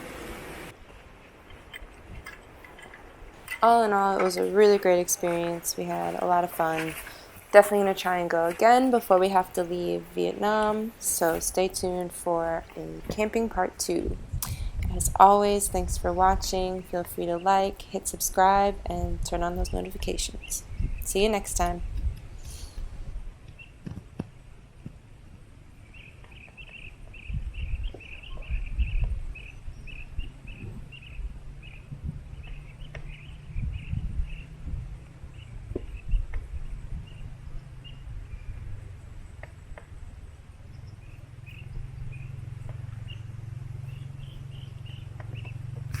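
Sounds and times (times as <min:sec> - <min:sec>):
low rumbling: 0:00.0 - 0:23.6, 0:26.7 - 0:46.0.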